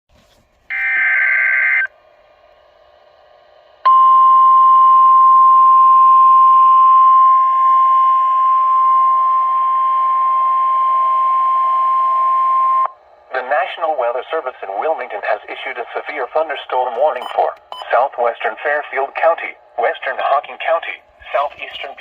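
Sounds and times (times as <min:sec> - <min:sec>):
steady high alarm tone: 0:00.7 - 0:01.9, 0:03.8 - 0:13.0
radio hiss: 0:13.3 - 0:22.0.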